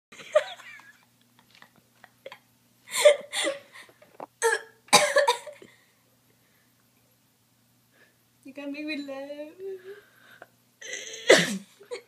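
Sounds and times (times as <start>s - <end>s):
girl hiccuping loudly: 4.4s - 5.5s.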